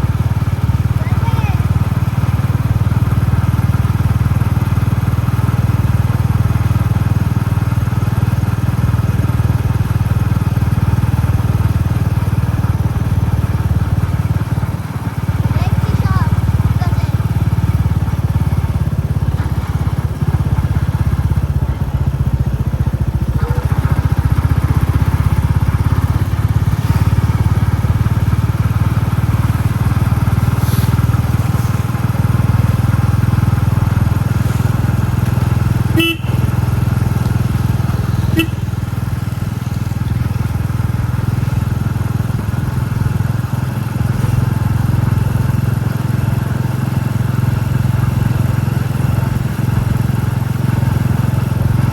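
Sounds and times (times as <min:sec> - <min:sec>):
motorcycle engine running: 0:00.0 - 0:51.9
short horn beeps: 0:35.9 - 0:36.8, 0:38.3 - 0:38.8.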